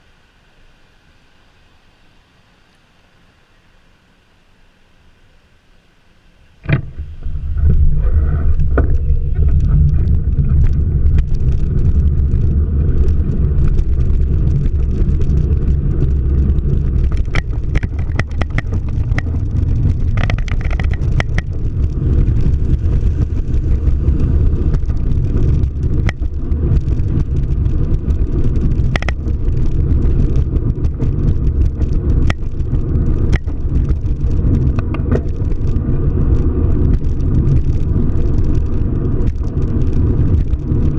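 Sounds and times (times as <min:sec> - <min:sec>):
car road and engine rumble: 0:00.0 - 0:40.9
light clicks and knocks: 0:17.0 - 0:21.7, 0:28.9 - 0:29.3.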